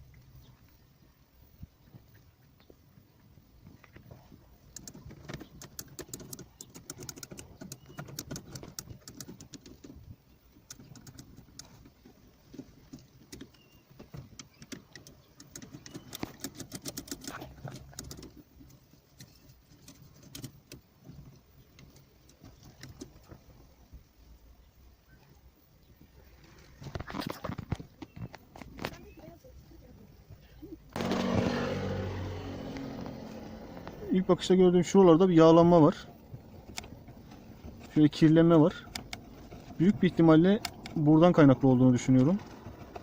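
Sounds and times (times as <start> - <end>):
rapid clicking of tools: 5.6 - 9.8, 14.4 - 18.4.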